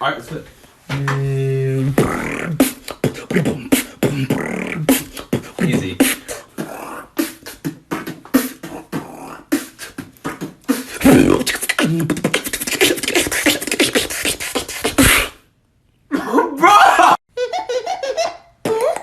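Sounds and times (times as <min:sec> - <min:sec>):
beatboxing: 0:00.9 - 0:15.4.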